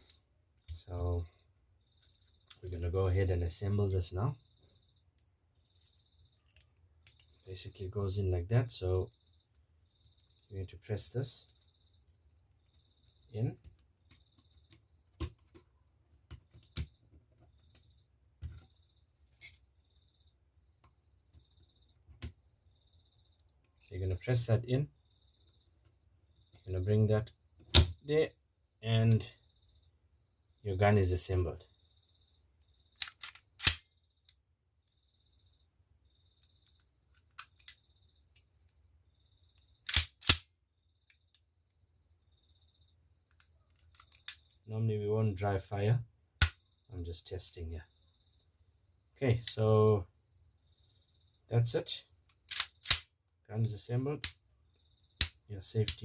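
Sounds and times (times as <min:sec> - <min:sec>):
steel pistol parts clicking: 0:06.5 - 0:07.4, 0:33.0 - 0:34.4, 0:36.4 - 0:37.8, 0:39.8 - 0:41.3, 0:43.3 - 0:44.6, 0:52.3 - 0:53.1
pistol action metal clicks: 0:33.0 - 0:33.9, 0:39.8 - 0:40.5, 0:43.7 - 0:44.4, 0:52.5 - 0:53.1.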